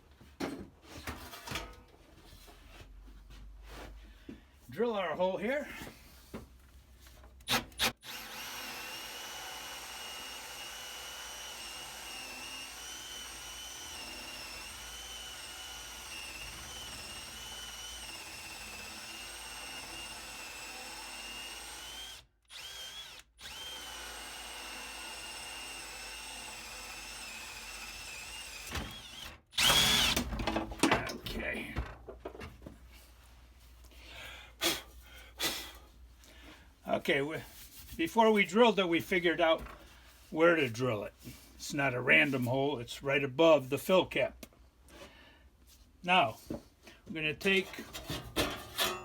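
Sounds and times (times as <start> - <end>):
power drill whining: 7.5 - 30.9.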